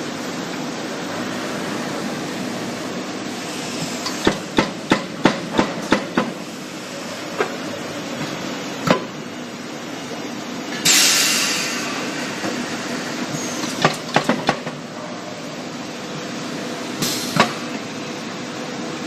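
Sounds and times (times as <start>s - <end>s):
workshop hiss: 0.0s - 19.0s
molding machine knocking: 4.2s - 6.4s.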